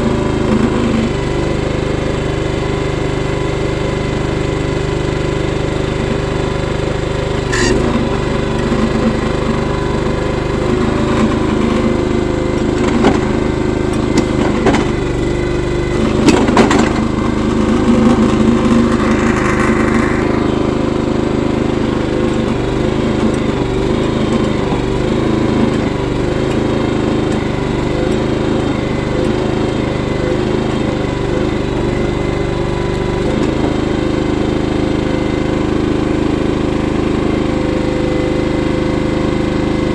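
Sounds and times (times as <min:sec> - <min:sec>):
small petrol engine running: 0:00.0 - 0:39.9
sharp metal clanks: 0:07.5 - 0:07.9.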